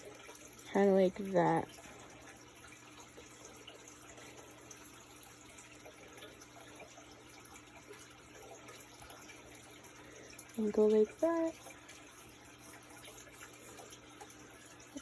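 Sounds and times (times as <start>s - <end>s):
steady hiss with low hum: 0.0s - 15.0s.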